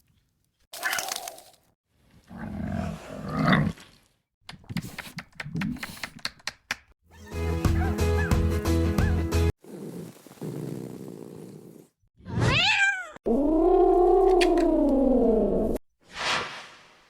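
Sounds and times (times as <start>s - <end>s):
music: 7.1s - 9.5s.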